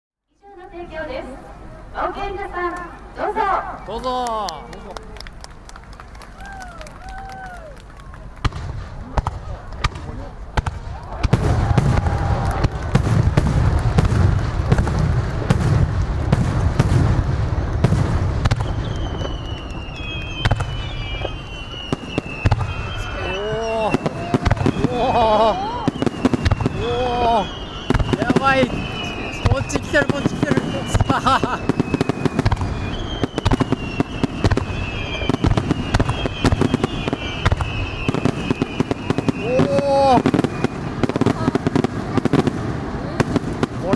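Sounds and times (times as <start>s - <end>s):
continuous low rumble: 0.7s - 21.4s
firework shells bursting: 8.4s - 42.4s
high falling whistle: 18.6s - 40.9s.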